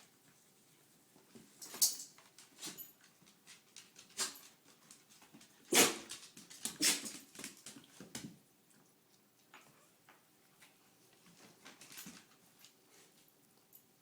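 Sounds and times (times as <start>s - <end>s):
dog sneezing: 5.7s - 6.1s, 6.8s - 7.1s.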